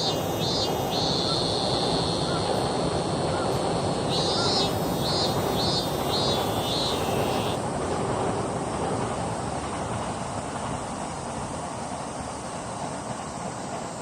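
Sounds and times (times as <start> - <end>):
bird calling: 0.0 - 2.7, 3.3 - 7.6.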